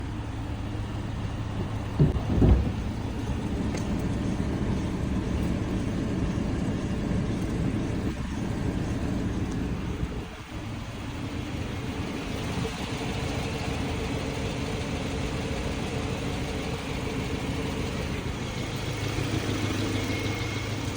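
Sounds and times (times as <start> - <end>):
car engine rumbling: 0.0 - 20.9
brief thumps: 1.6 - 3.9.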